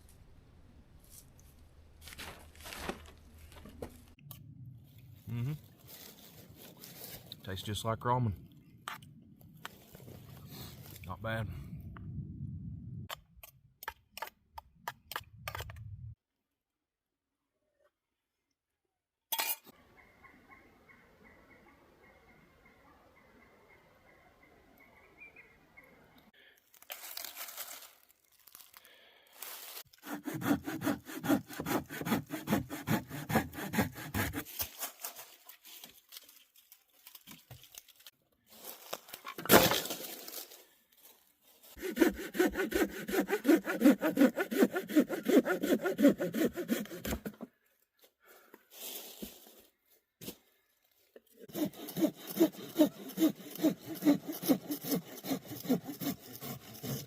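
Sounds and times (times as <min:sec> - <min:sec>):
wood cracking: 0:01.5 - 0:04.2
hand saw cutting wood: 0:29.9 - 0:34.7, 0:41.7 - 0:47.5, 0:51.4 - 0:57.0.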